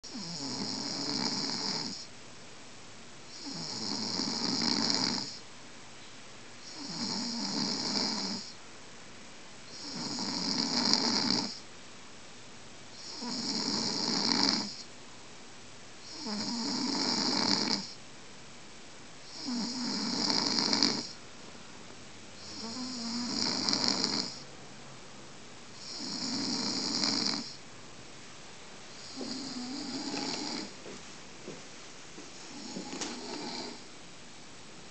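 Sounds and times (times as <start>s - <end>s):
man snoring heavily: 0.0s - 2.1s, 3.3s - 5.4s, 6.6s - 8.6s, 9.7s - 11.6s, 13.0s - 14.9s, 16.0s - 18.0s, 19.3s - 21.2s, 22.4s - 24.4s, 25.8s - 27.6s, 28.9s - 30.7s, 32.4s - 33.9s
quiet breaths: 0.0s - 2.2s, 22.4s - 24.6s, 28.8s - 34.0s.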